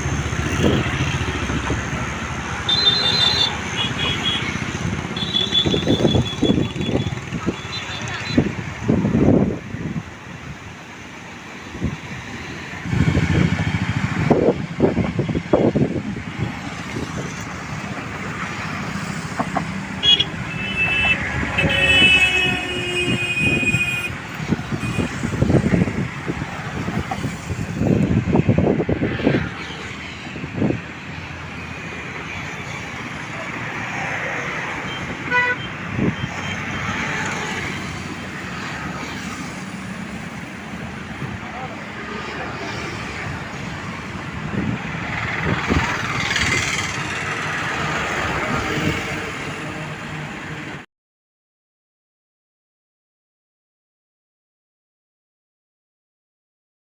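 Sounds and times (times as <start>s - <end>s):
road traffic passing: 0.0s - 50.9s
vehicle horn: 20.0s - 25.1s, 35.0s - 36.3s.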